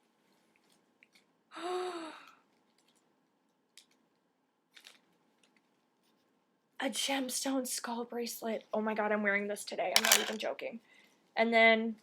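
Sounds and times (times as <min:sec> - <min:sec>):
woman sighing with delight: 0:01.6 - 0:02.3.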